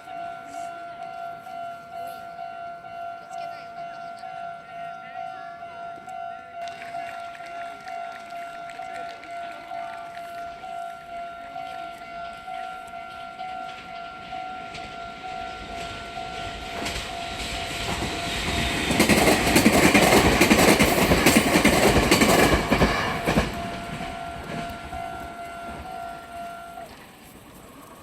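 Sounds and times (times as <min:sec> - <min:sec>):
level-crossing warning bell: 0:00.0 - 0:28.0
train passing: 0:00.0 - 0:28.0
wheels clacking over rail joints: 0:06.0 - 0:28.0.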